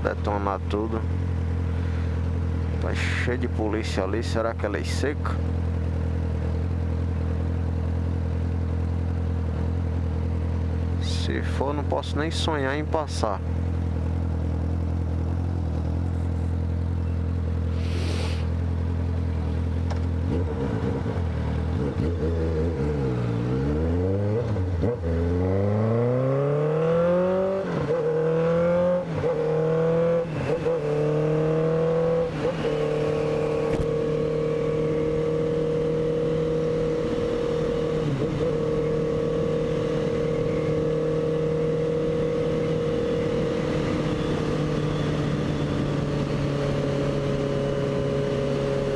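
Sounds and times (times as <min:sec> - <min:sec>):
motorcycle engine accelerating: 0:13.4 - 0:48.9.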